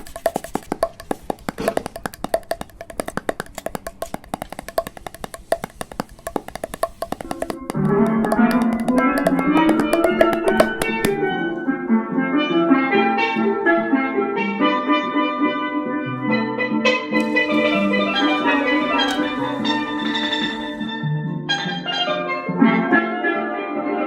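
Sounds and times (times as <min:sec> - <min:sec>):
bright melody over drums: 0:17.2 - 0:20.7.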